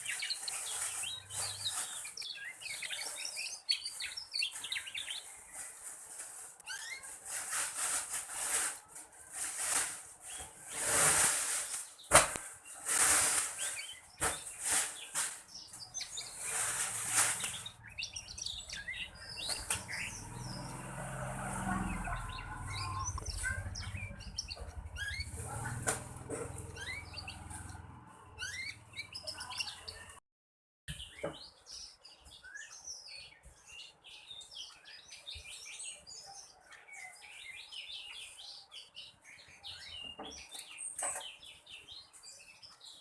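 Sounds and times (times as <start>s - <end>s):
canary chirping and twittering: 0.0s - 30.2s, 30.9s - 43.0s
bird fluttering and hopping in cage: 4.6s - 21.7s.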